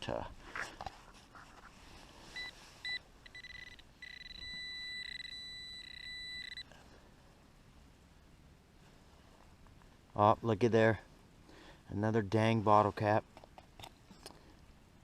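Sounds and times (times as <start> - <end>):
metal detector beeps and tone: 2.4 - 6.7.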